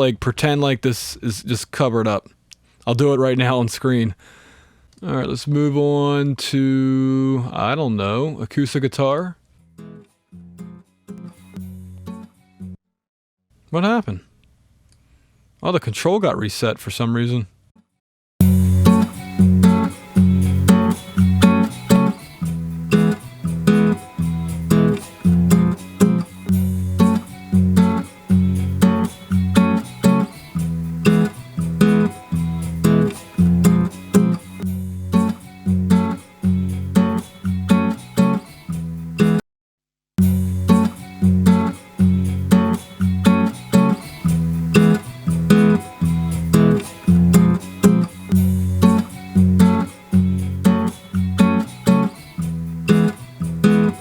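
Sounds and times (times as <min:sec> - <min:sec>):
strummed acoustic guitar: 0:09.7 - 0:12.4, 0:18.4 - 0:39.4, 0:40.2 - 0:54.0.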